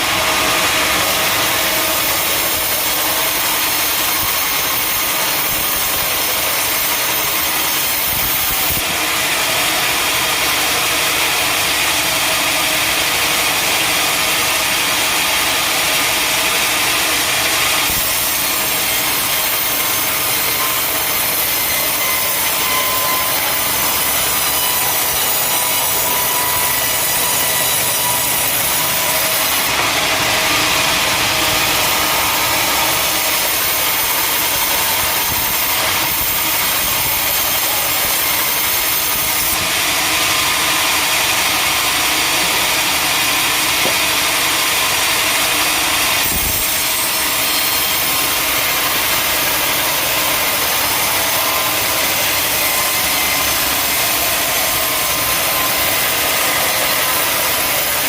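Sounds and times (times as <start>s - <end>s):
sawmill saw cutting log: 0.0s - 58.0s.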